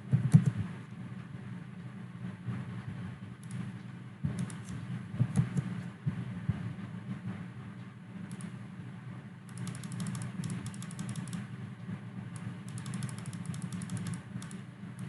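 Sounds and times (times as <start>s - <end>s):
steady low hum: 0.0s - 15.0s
typing on a computer keyboard: 4.3s - 5.7s, 8.3s - 8.5s, 9.5s - 11.5s, 12.4s - 15.0s.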